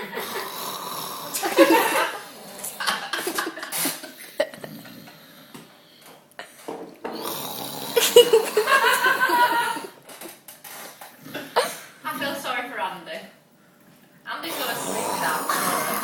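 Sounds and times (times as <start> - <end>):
people laughing: 0.0 - 0.6, 1.4 - 5.0, 8.0 - 10.0
mock snoring snorts: 0.0 - 3.1, 4.5 - 5.6, 7.1 - 9.8, 11.2 - 12.4, 14.4 - 16.0.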